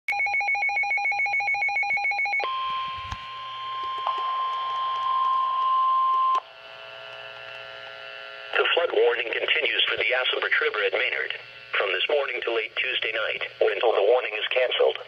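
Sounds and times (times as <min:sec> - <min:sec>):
weather radio alarm tone: 0:00.1 - 0:06.4
radio hiss: 0:08.5 - 0:15.0.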